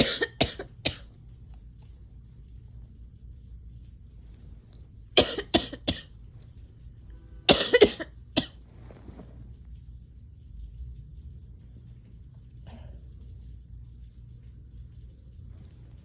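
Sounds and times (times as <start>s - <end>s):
person coughing: 0.0s - 1.1s, 5.2s - 6.1s, 7.5s - 8.6s.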